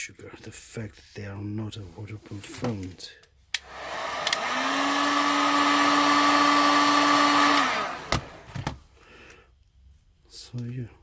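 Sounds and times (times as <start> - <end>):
blower switch click: 3.6 - 4.5
hot-air blower whirring: 3.6 - 8.8.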